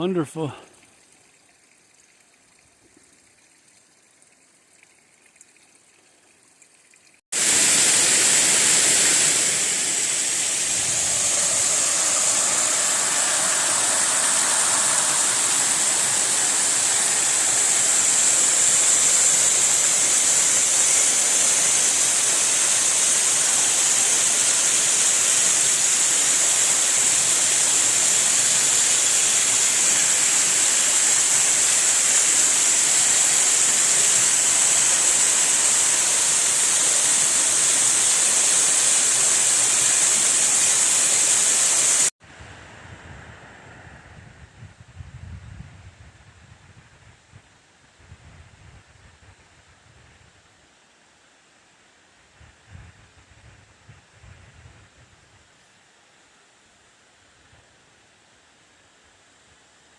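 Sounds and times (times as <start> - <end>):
waterfall rushing: 7.4 - 42.1.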